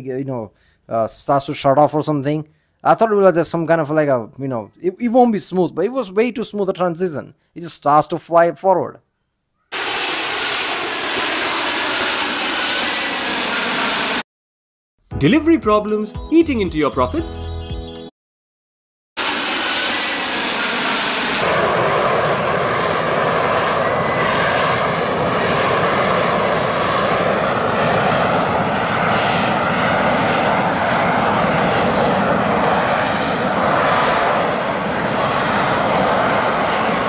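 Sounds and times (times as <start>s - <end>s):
jet engine roaring: 9.7s - 14.2s, 19.2s - 37.0s.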